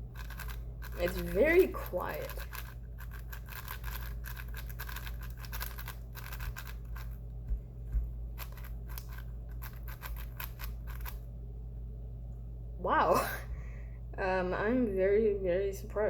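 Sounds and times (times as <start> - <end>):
plastic puzzle cube clicking: 2.2 - 7.1.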